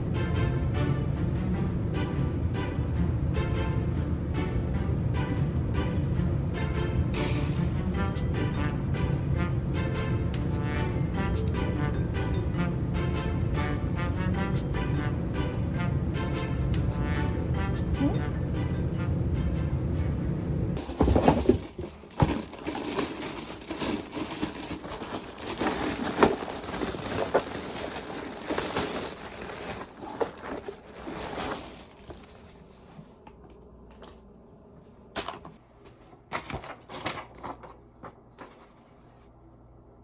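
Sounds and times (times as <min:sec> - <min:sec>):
packaging crinkling and tearing: 0:20.8 - 0:32.5.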